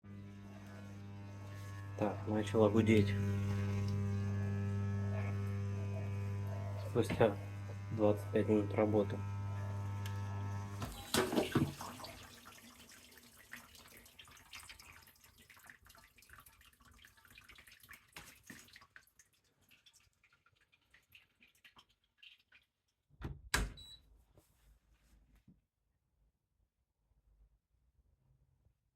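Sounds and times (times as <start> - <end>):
dishwasher humming: 0.0 - 12.5
dishwasher clunk: 10.8 - 11.9
water trickling and dripping: 10.9 - 23.0.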